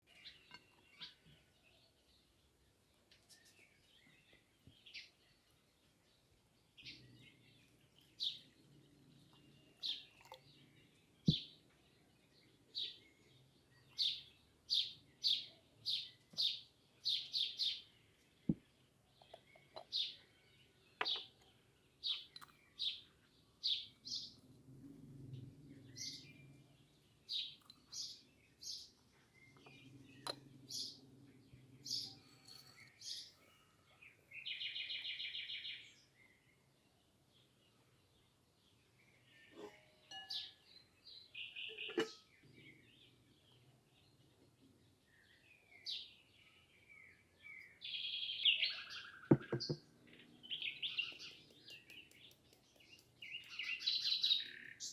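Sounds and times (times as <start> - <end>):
small birds chirping: 0.0 - 54.9.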